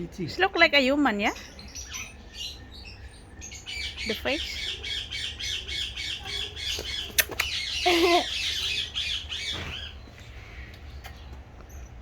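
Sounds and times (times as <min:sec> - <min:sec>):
shrill squawking calls: 0:01.3 - 0:10.0
sharp click: 0:07.1 - 0:07.6.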